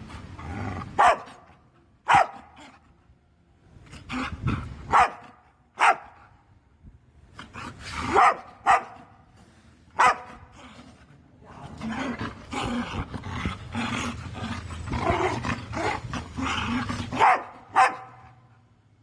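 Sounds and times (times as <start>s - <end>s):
dog barking: 1.0s - 2.6s, 4.9s - 6.2s, 8.0s - 9.1s, 10.0s - 10.4s, 17.1s - 18.4s.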